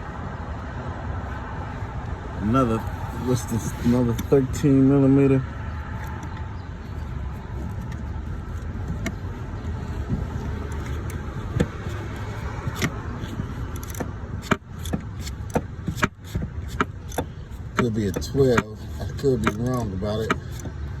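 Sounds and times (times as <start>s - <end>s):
steady low rumble: 0.0s - 21.0s
metal tools clinking on engine parts: 11.8s - 20.7s.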